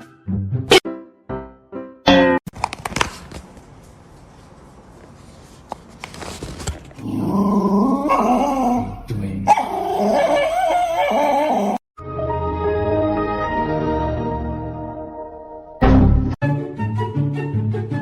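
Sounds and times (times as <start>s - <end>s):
dog howling: 7.1s - 8.9s, 9.5s - 11.8s.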